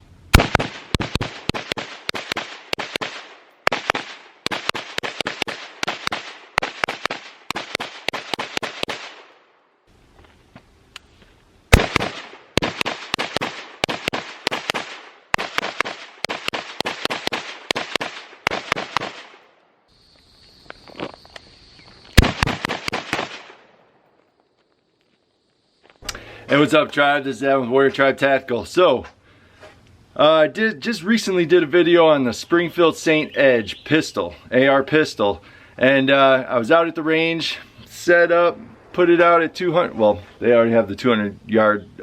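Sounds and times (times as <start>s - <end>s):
rapid gunfire: 0.3s - 9.4s, 11.7s - 19.4s, 22.2s - 23.6s.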